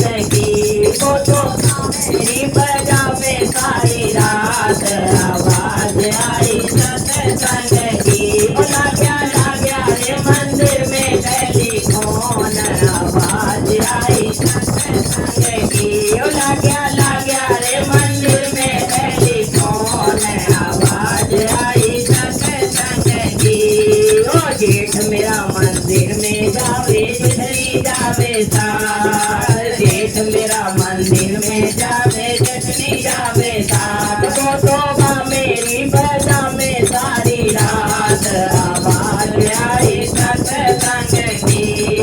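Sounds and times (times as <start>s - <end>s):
jingling rattle percussion: 0.0s - 42.0s
steady drum beat: 0.0s - 42.0s
women's group singing: 0.0s - 42.0s.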